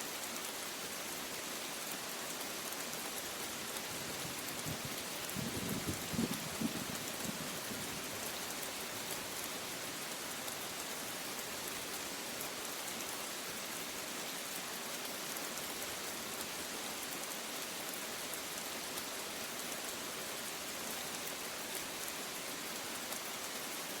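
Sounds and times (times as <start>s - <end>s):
heavy rain hissing: 3.2s - 12.2s
low rumble of thunder: 4.6s - 7.9s.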